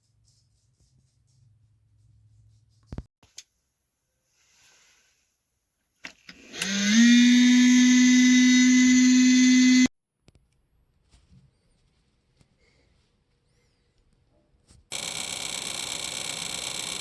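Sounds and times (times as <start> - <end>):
electric motor hum: 6.5 - 9.9.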